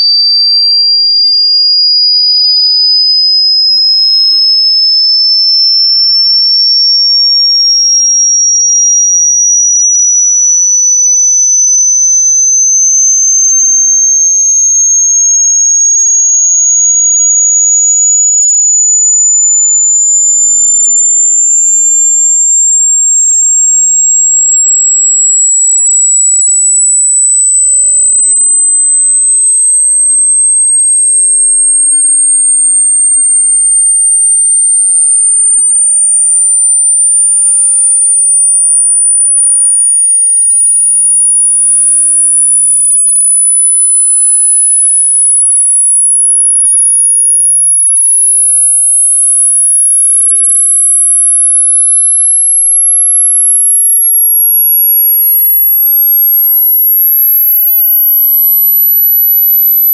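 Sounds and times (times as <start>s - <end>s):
high electronic tone sweeping upward: 14.2s - 26.2s, 30.8s - 45.3s, 57.3s - 59.9s.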